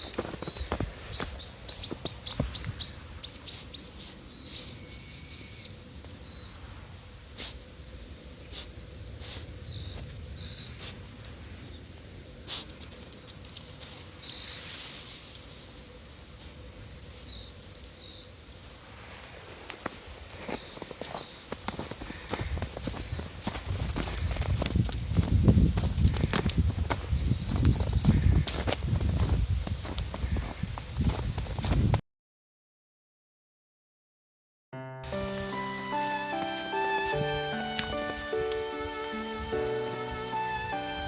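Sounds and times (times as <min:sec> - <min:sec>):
small birds chirping: 0:00.0 - 0:07.6, 0:08.5 - 0:18.9, 0:19.8 - 0:31.8.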